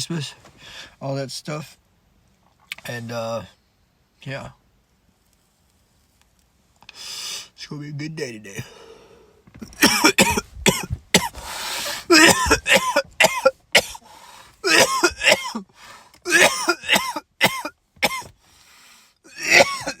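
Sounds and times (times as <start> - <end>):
man coughing: 9.6 - 14.0, 14.6 - 15.7, 16.3 - 18.3, 19.3 - 20.0
rasping breath: 11.3 - 12.2.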